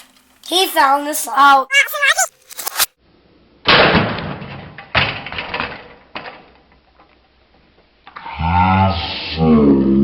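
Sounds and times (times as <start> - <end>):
toy truck crashing and clattering: 3.8 - 7.0.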